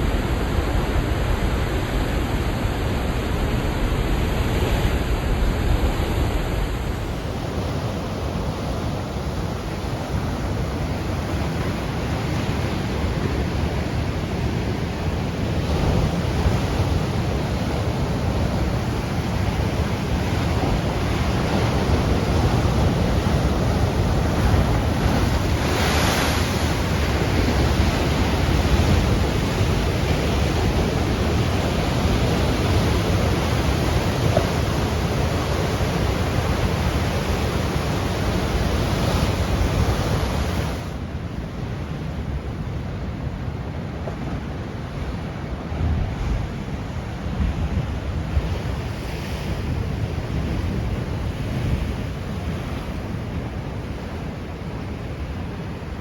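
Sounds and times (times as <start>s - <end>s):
wave breaking: 0.0s - 9.8s, 15.6s - 41.0s
ocean surf washing ashore: 0.0s - 56.0s.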